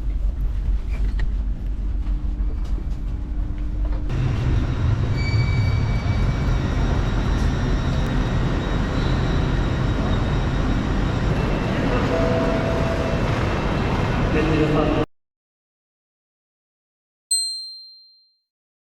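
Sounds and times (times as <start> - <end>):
passenger train rumbling: 0.0 - 15.1.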